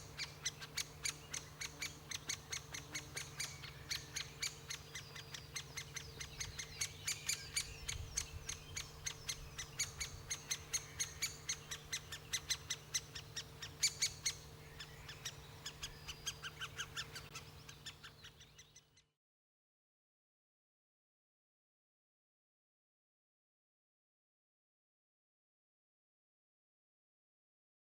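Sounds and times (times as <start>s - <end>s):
woodpecker calling: 0.0s - 19.0s.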